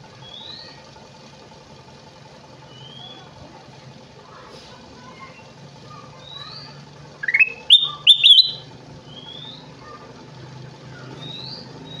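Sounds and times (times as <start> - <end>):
bird singing whistled notes: 6.3 - 9.7
faint rising whistles: 7.2 - 9.7.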